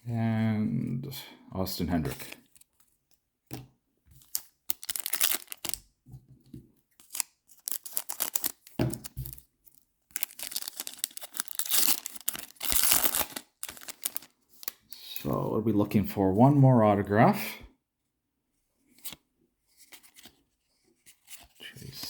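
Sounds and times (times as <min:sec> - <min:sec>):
wrapper tearing and crinkling: 0:04.2 - 0:05.8, 0:07.0 - 0:14.9.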